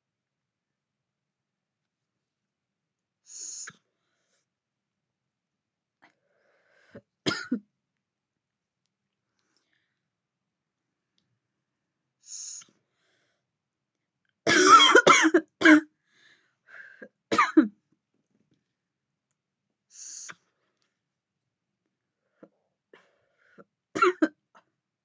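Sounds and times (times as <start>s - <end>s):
woman coughing: 7.2s - 7.6s, 14.5s - 15.9s, 17.3s - 17.7s, 24.0s - 24.4s.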